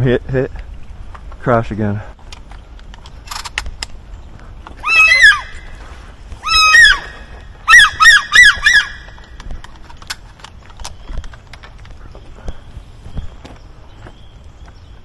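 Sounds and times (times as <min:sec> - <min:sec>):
duck squeals: 0:04.8 - 0:05.6, 0:06.4 - 0:09.1.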